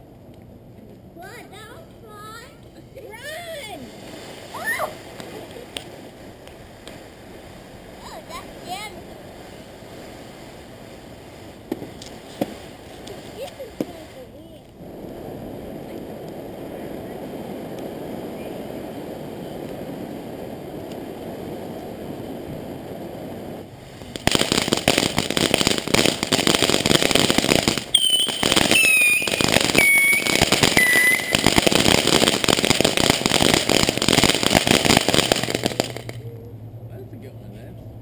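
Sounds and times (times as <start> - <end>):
firework crackling: 0.0 - 36.6
firework hissing: 1.2 - 36.4
falling whistles: 27.9 - 31.8.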